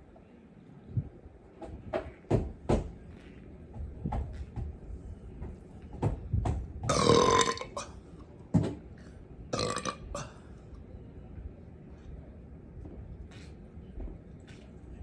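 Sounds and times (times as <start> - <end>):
person burping: 6.9 - 7.9, 9.5 - 10.4.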